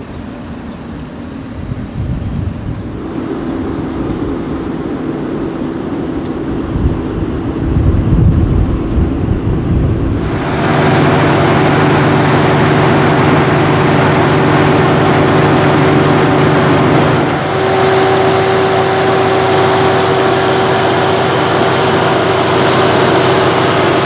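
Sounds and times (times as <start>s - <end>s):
car engine rumbling: 9.5s - 24.0s.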